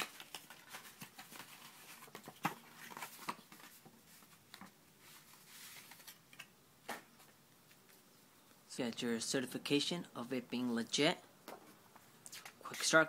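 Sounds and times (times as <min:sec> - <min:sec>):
paper rustling: 0:00.0 - 0:06.5.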